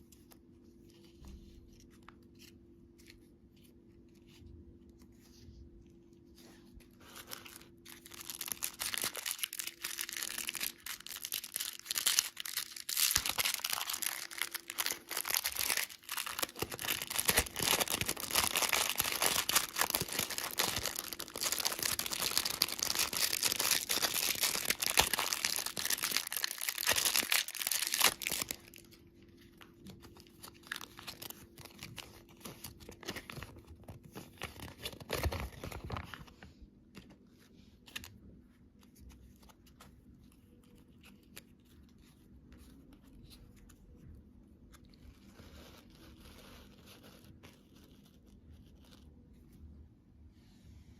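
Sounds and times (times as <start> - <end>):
candy packaging crinkling: 6.8 - 37.2.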